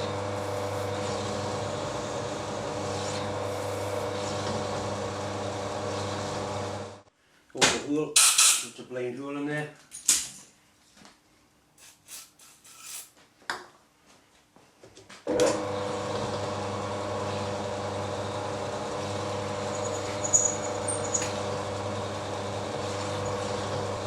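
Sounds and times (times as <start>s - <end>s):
milling machine humming: 0.0s - 7.1s, 15.4s - 24.0s.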